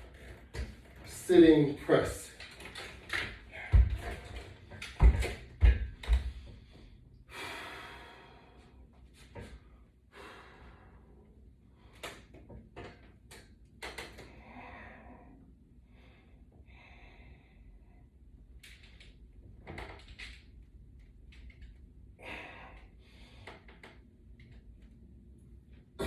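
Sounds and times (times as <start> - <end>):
heavy knocks: 3.6 - 6.5.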